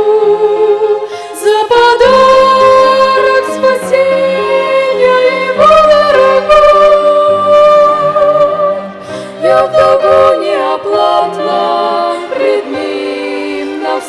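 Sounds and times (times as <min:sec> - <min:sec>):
violin ensemble playing hymn melody: 0:00.0 - 0:14.0.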